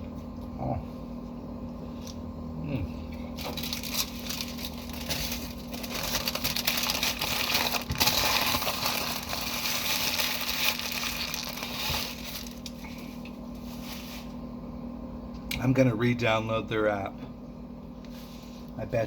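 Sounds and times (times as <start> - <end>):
paper wrapper crinkling: 3.4 - 13.1.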